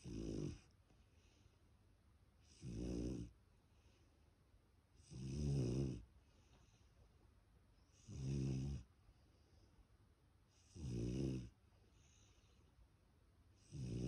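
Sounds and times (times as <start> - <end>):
puppy snoring: 0.0 - 0.7, 2.4 - 3.4, 5.0 - 6.1, 7.9 - 8.9, 10.5 - 11.6, 13.6 - 14.0.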